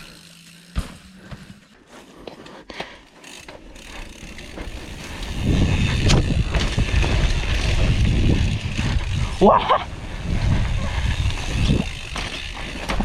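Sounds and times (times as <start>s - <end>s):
bike clicks and rattles: 0.0s - 13.0s
bike tyres rumbling over rough ground: 0.0s - 13.0s
wind on microphone: 5.2s - 12.1s.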